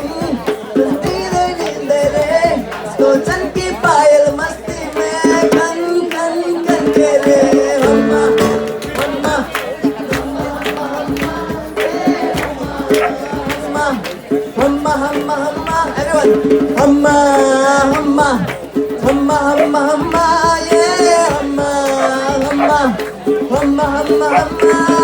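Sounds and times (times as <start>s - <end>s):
hand drum beating: 0.0s - 25.0s.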